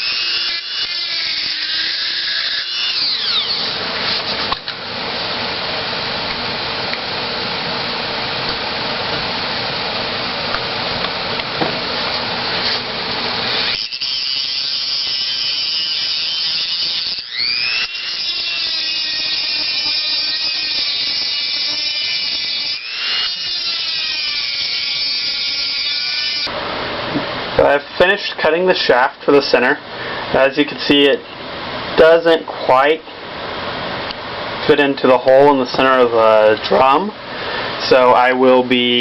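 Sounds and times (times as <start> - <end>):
rotary tool grinding steel: 0.0 - 4.6, 12.1 - 26.5
high-pitched tool whine: 0.0 - 4.7, 11.6 - 26.6.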